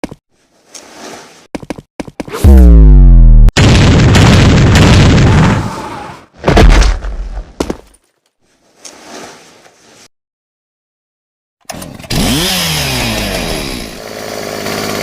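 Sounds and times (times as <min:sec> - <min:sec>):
loud crashing blast: 0:02.4 - 0:05.7.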